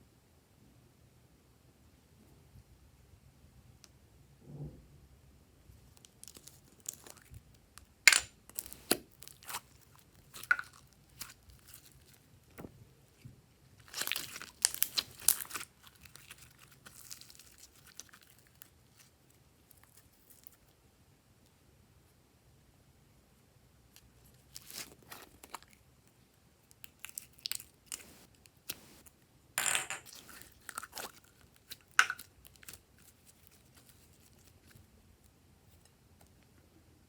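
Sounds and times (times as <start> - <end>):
sticky slime crackles: 5.9 - 7.4, 8.5 - 12.2, 13.8 - 19.1, 26.7 - 29.1, 30.0 - 34.9.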